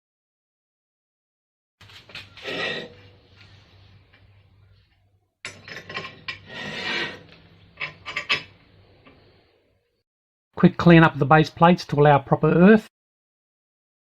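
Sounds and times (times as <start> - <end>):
steel pieces clinking and scraping: 1.8 - 3.5, 5.5 - 8.6.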